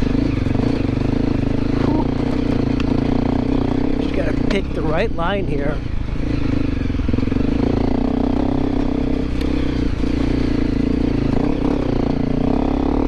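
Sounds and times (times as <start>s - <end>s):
motorcycle engine running at low revs: 0.0s - 13.0s.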